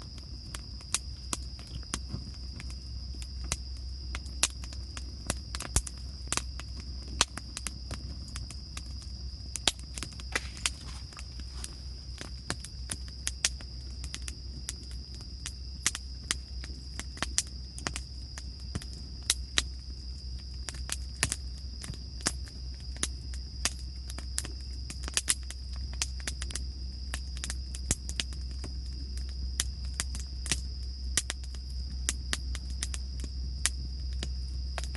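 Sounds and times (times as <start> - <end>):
low rumble: 0.0 - 20.4
insects chirring: 0.0 - 34.9.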